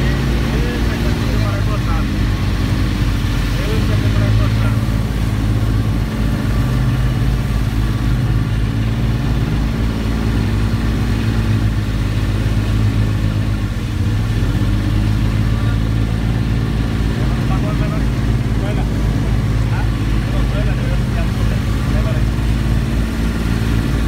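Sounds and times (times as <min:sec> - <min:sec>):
engine running with low hum: 0:00.0 - 0:24.0.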